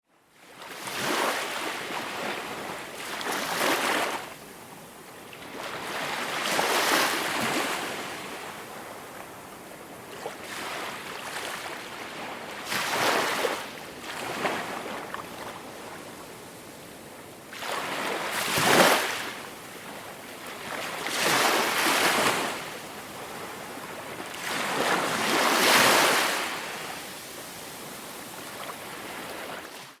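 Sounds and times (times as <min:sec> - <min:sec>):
ocean waves breaking: 0:24.2 - 0:27.0.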